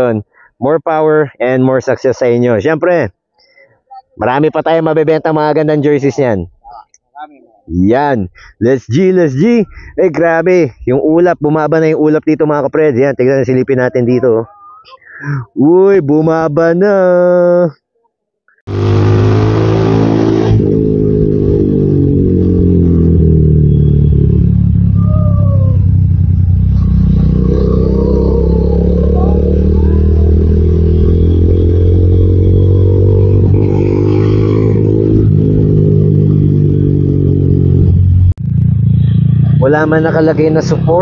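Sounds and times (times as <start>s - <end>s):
motorcycle engine revving: 18.7s - 41.0s.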